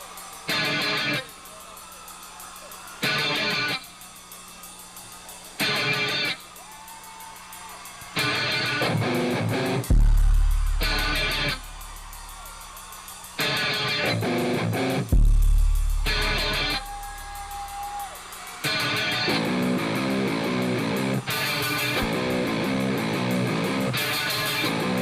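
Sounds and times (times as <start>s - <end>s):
deep bass note: 9.9s - 11.1s, 15.2s - 16.1s.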